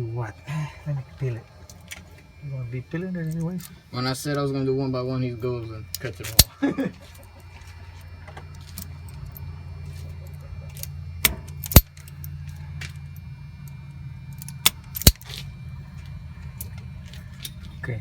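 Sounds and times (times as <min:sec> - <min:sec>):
low hum: 0:00.0 - 0:18.0
hand tools clicking metallically: 0:05.9 - 0:06.6.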